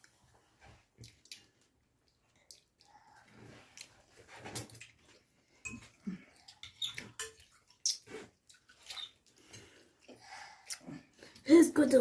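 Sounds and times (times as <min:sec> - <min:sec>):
people chewing: 0:00.0 - 0:11.4.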